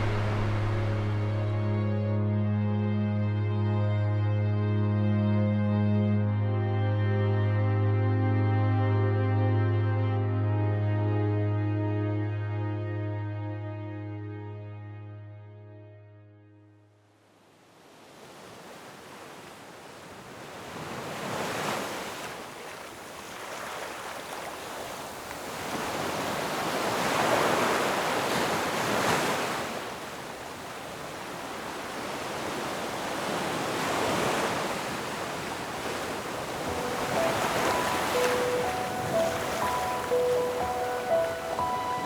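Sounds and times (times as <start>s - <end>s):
wind hissing: 0.0s - 1.8s
ocean waves surging: 0.0s - 2.0s, 18.0s - 42.0s.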